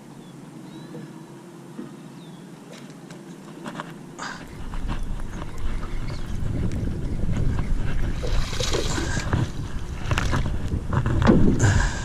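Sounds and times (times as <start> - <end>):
wind buffeting microphone: 4.3 - 12.0.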